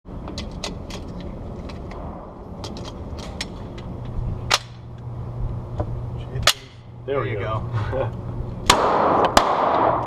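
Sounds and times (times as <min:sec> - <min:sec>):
gunshots: 0:08.7 - 0:10.0.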